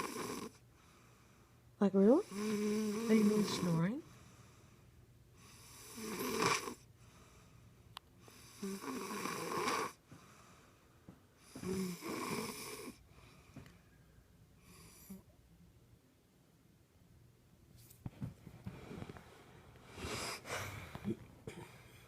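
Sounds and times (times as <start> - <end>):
woman snoring: 0.0 - 0.6, 2.1 - 3.9, 5.6 - 6.8, 8.4 - 10.0, 11.5 - 13.0.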